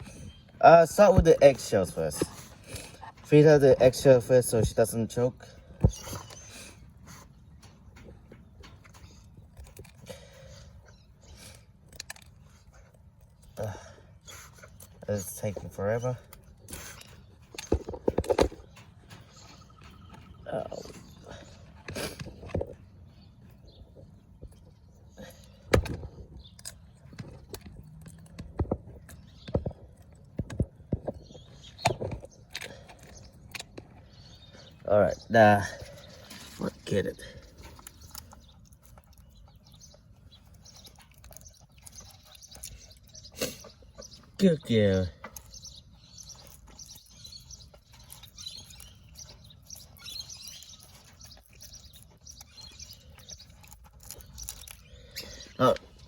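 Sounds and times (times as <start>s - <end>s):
dog crunching eggshell: 36.1s - 44.4s, 45.2s - 56.0s.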